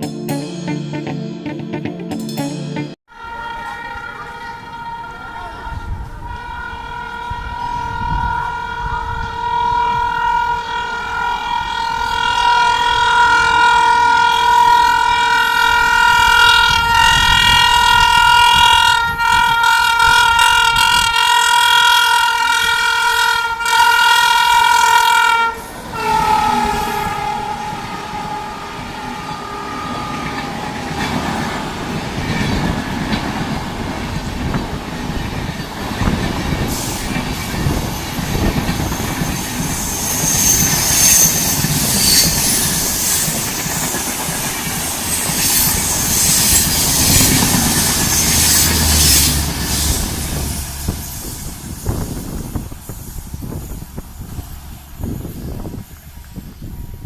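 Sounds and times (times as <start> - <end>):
locomotive horn honking: 0.0 - 33.1
train coaches rumbling and clattering: 3.3 - 57.0.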